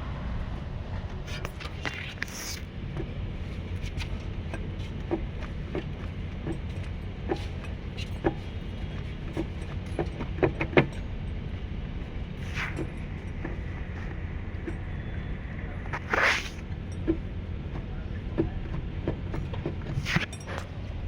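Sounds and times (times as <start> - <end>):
low road rumble: 0.0 - 21.0
car suspension knocking: 2.8 - 12.2, 16.7 - 20.8.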